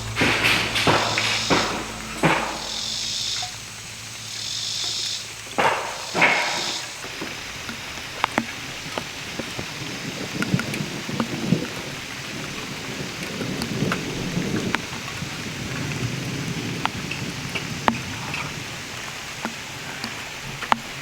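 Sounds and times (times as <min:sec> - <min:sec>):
low rumble: 0:00.0 - 0:04.5
heavy rain pouring: 0:00.0 - 0:21.0
raindrops ticking close by: 0:00.0 - 0:21.0.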